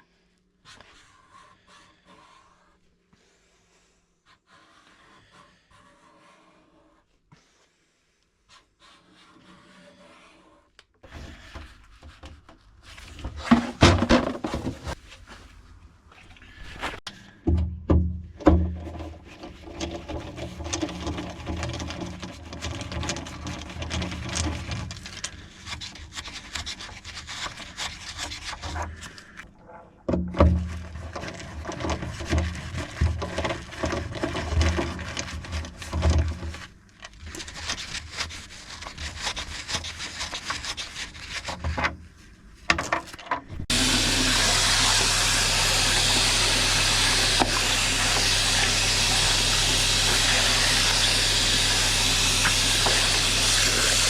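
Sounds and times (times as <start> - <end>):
wood being sanded: 43.6 - 54.0.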